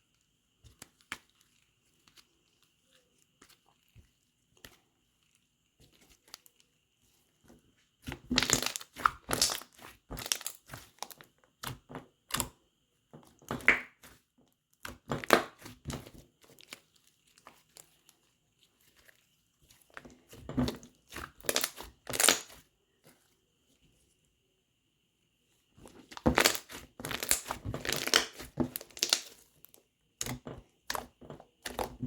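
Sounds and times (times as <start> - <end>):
slime crackling and popping: 8.0 - 12.5, 21.0 - 22.6, 25.9 - 29.4.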